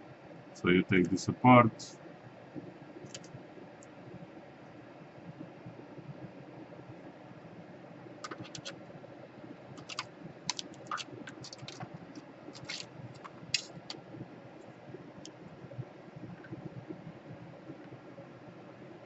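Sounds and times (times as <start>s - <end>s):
plastic parts clicking and tapping: 8.2s - 8.8s, 9.8s - 14.0s.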